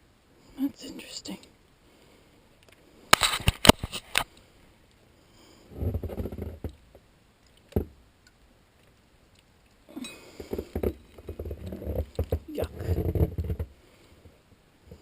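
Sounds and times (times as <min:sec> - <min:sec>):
low rumbling handling noise: 0:05.6 - 0:09.0, 0:09.6 - 0:15.0
sharp knocks and clicks: 0:05.9 - 0:08.0, 0:10.4 - 0:13.7.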